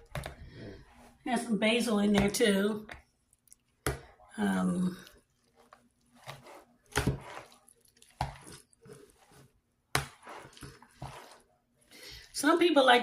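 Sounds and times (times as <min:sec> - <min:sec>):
salad squishing in a bowl: 0:02.9 - 0:12.4.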